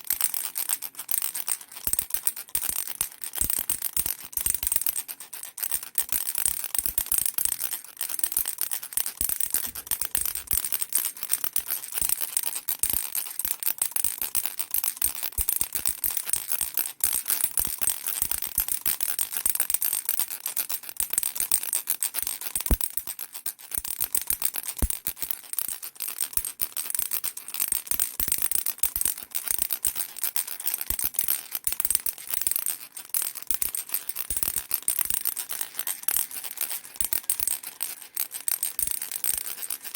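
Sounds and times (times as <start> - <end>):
baby rattle beads clattering: 33.2 - 39.9.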